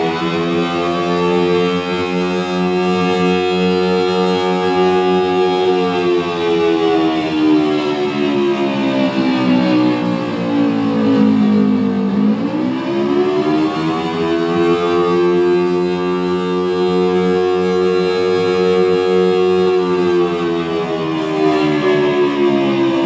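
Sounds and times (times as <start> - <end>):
synthesized siren tone: 0.0 - 23.0.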